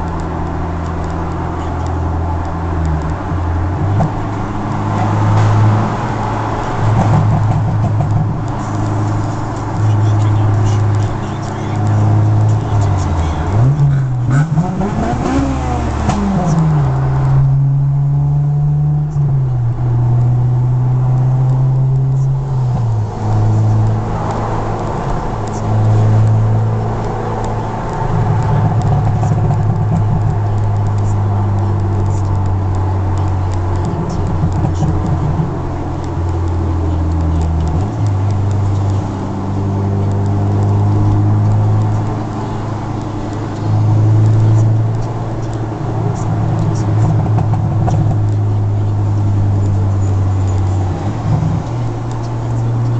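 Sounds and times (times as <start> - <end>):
car engine drone from inside cabin: 0.0 - 52.9
exhaust crackle: 0.0 - 52.9.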